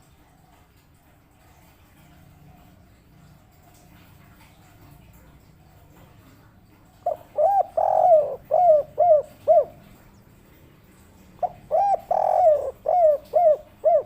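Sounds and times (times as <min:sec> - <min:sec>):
dove cooing: 0:05.4 - 0:14.0.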